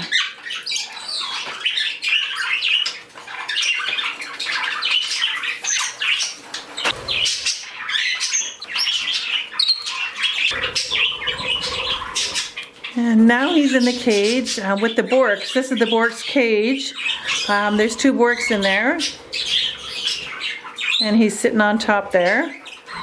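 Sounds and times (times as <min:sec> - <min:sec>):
parakeets and canary chirping: 0:00.0 - 0:23.0.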